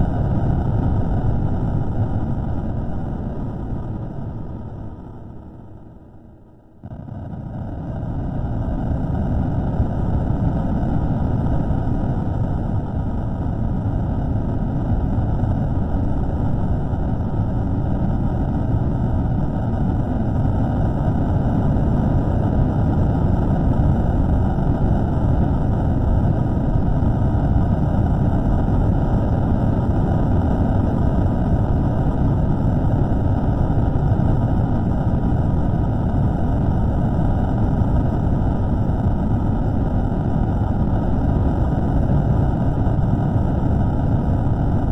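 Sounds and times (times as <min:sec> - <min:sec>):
low rumbling noise: 0:00.0 - 0:44.9.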